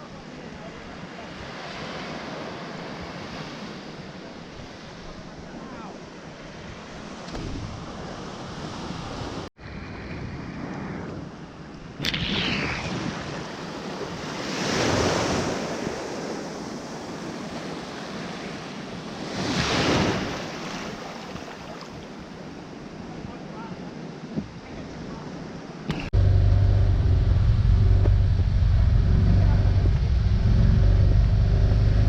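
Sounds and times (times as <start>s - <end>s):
ocean waves washing in: 6.0s - 23.0s.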